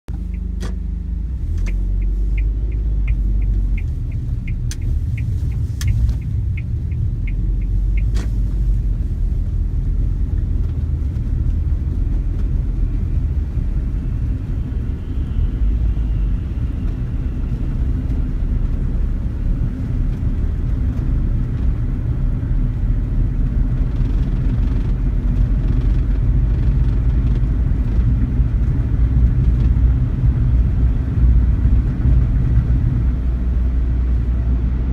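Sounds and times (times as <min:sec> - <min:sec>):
car road and engine rumble: 0:00.1 - 0:34.9
even ticking: 0:01.6 - 0:08.5.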